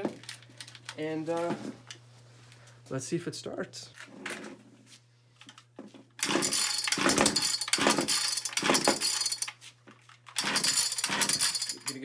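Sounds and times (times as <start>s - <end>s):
starter cord pulls: 10.4s - 12.0s.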